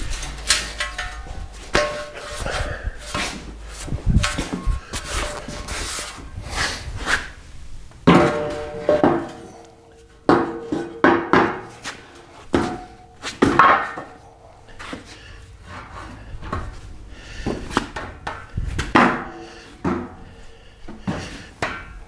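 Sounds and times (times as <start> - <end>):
metal tubing clanking: 0.0 - 6.8, 8.0 - 11.8.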